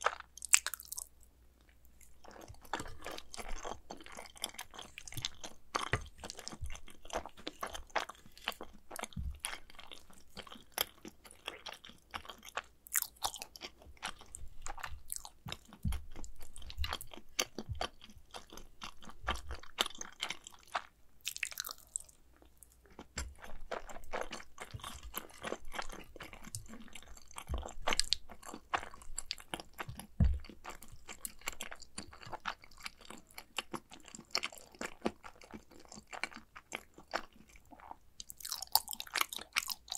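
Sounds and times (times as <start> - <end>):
chewing with wet mouth clicks: 0.0 - 39.9
soft low thump: 15.9 - 16.1, 30.2 - 30.6.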